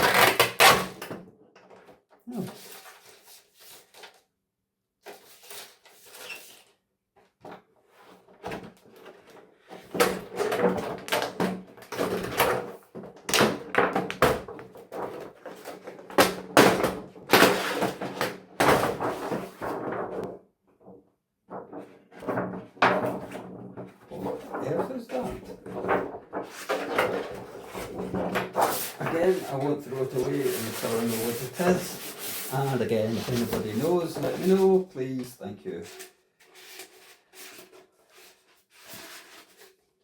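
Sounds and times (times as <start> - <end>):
plastic and metal pieces clattering: 21.6 - 29.1.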